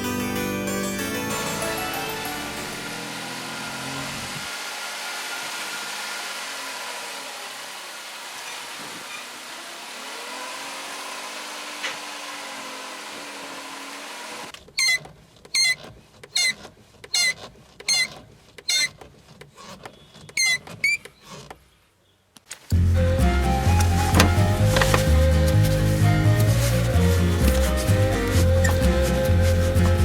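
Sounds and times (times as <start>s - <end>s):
steering squeaking: 1.1s - 4.5s, 8.3s - 10.0s, 14.5s - 21.8s, 23.0s - 30.0s.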